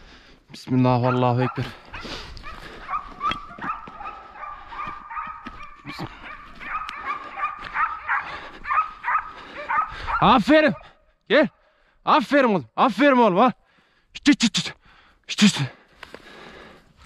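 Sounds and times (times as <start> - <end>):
hounds yelping and whining: 1.0 - 11.1.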